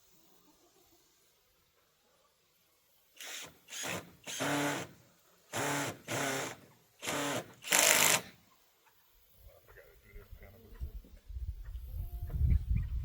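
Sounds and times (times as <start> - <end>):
power drill bursts: 3.2 - 8.4.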